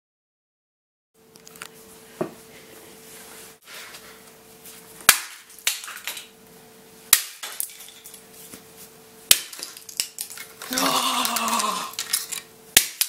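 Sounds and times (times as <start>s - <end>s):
plastic smoke alarm being smashed: 9.3s - 13.0s.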